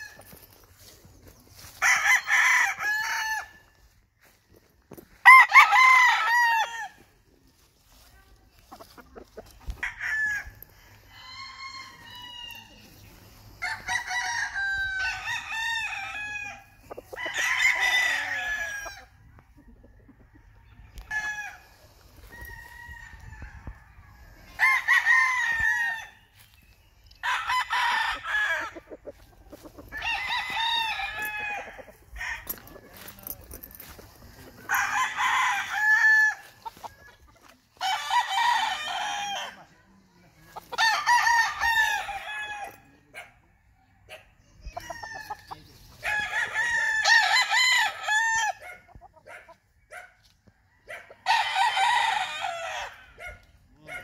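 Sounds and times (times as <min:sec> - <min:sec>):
rooster crowing: 0:09.8 - 0:12.7, 0:13.6 - 0:19.0, 0:34.7 - 0:36.8, 0:37.8 - 0:39.6, 0:44.8 - 0:48.8, 0:50.8 - 0:53.3.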